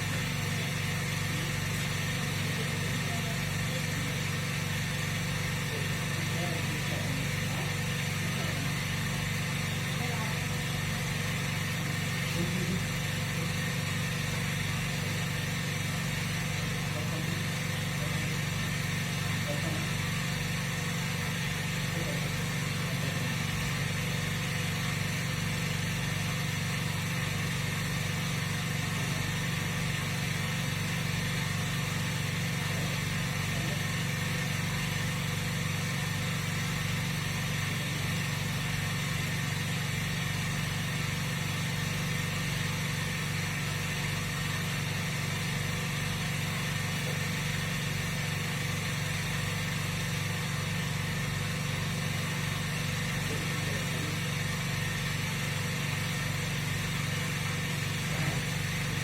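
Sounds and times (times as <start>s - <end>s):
machine hum with constant tones: 0.0s - 59.0s.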